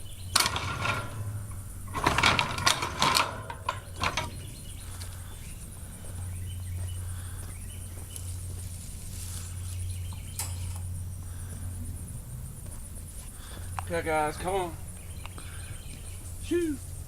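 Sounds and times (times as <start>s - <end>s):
metallic clanks and rattles: 0.0s - 5.6s, 10.2s - 11.0s
steady low hum: 0.0s - 17.0s.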